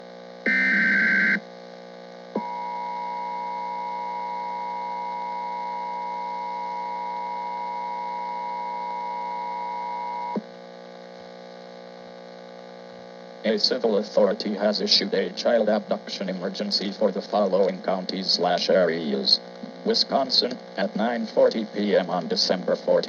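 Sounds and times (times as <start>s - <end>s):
electrical hum: 0.0s - 23.0s
steady attention tone: 0.5s - 1.4s.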